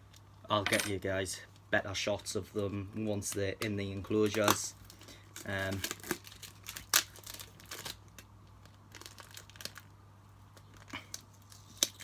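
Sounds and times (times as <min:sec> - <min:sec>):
packaging crinkling and rustling: 0:03.2 - 0:09.9, 0:10.5 - 0:12.0.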